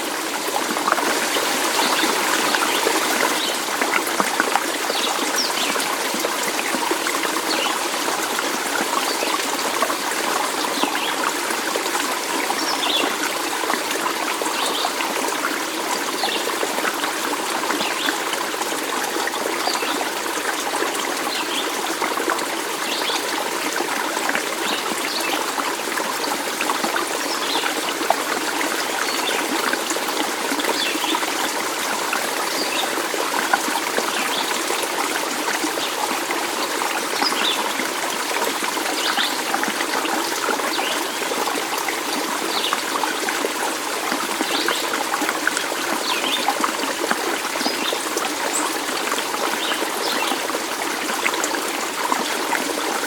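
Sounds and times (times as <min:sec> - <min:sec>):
stream water rushing: 0:00.0 - 0:53.0.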